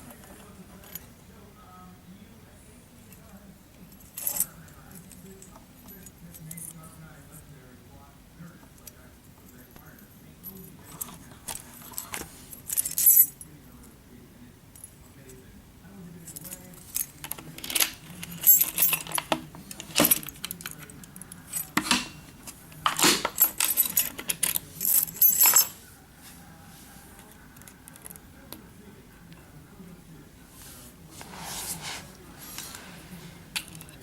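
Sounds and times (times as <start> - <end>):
keys jangling: 17.6 - 20.3, 22.9 - 25.8.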